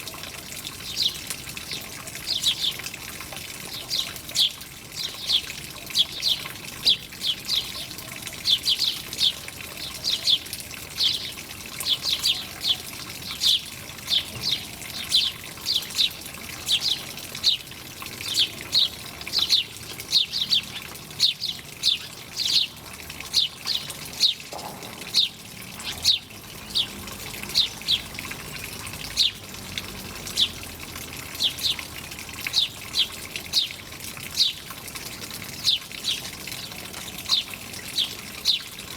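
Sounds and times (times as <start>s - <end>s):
running water: 0.0s - 38.9s
small bird chirping: 3.7s - 29.5s, 30.3s - 30.6s.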